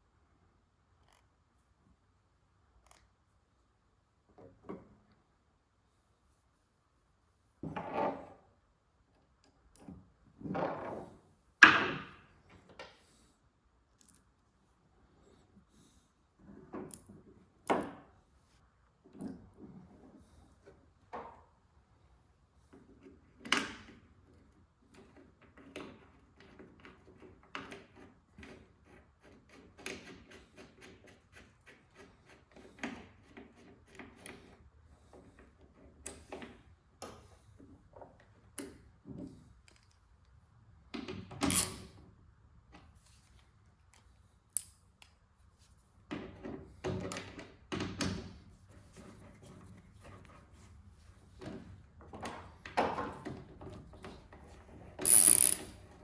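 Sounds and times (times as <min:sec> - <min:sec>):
tools clicking and knocking: 0:55.0 - 0:56.0.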